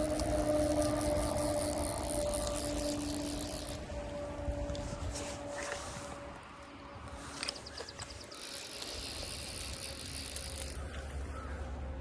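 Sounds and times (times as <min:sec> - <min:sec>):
fishing reel ratchet clicks: 0:00.0 - 0:03.9, 0:07.5 - 0:11.0.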